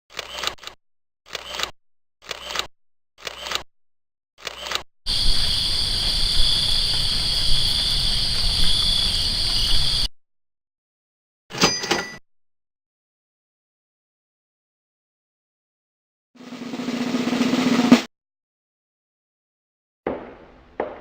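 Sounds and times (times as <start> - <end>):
steady high chirring: 5.1 - 10.1.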